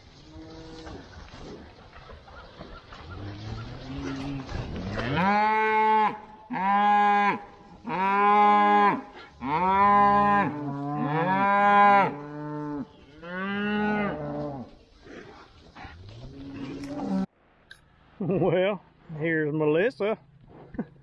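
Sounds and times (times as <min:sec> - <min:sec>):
cows mooing: 0:00.2 - 0:01.5, 0:02.8 - 0:17.3.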